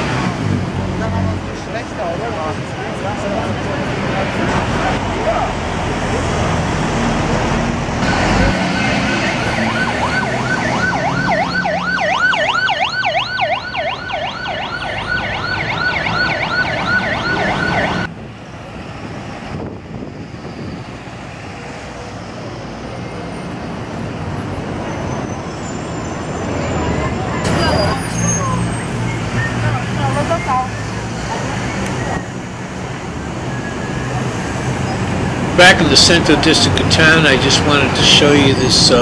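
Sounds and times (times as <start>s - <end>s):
street traffic noise: 0.0s - 39.0s
emergency siren yelping: 8.0s - 18.1s.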